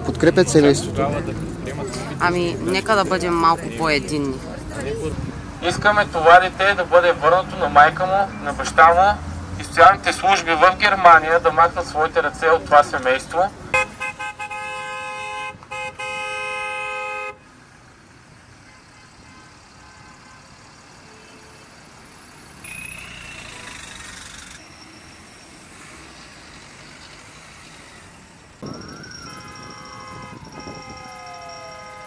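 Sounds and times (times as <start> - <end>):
street traffic: 0.0 - 32.0
car horn blaring: 13.7 - 17.4, 29.2 - 32.0.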